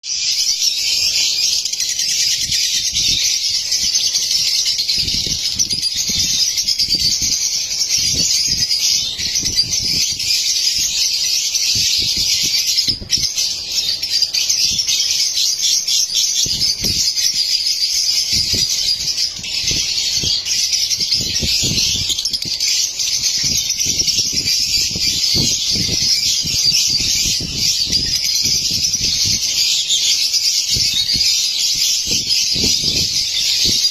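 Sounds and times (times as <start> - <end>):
birds twittering: 0.0 - 33.9.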